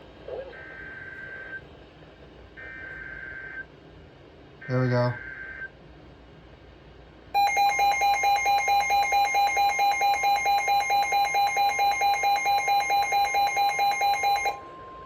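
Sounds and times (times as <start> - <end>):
pulsing electronic beep: 7.4 - 15.0.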